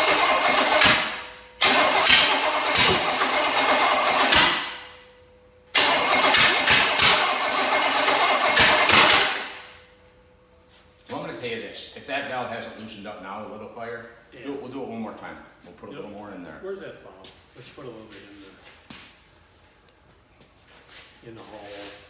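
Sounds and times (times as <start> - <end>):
engine cranking and running: 0.0 - 5.0, 5.8 - 9.8.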